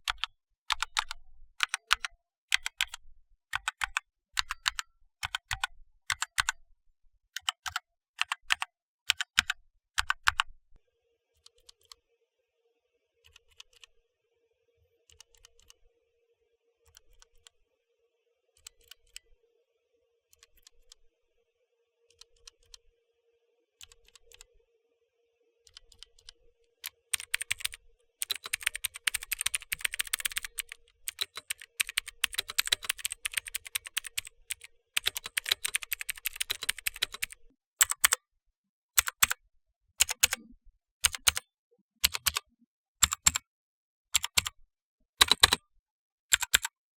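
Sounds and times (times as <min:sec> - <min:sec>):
clicky keyboard switches typing: 0:00.1 - 0:03.0, 0:03.6 - 0:06.6, 0:25.7 - 0:38.2, 0:39.0 - 0:39.4, 0:40.0 - 0:41.4, 0:42.0 - 0:42.4, 0:43.0 - 0:43.4, 0:44.2 - 0:44.5, 0:45.2 - 0:45.6, 0:46.3 - 0:46.7
linear keyboard switches typing: 0:00.1 - 0:03.0, 0:03.6 - 0:06.6, 0:07.4 - 0:10.5, 0:25.7 - 0:38.2, 0:39.0 - 0:39.4, 0:40.0 - 0:41.4, 0:42.0 - 0:42.4, 0:43.0 - 0:43.4, 0:44.2 - 0:44.5, 0:45.2 - 0:45.6, 0:46.3 - 0:46.7.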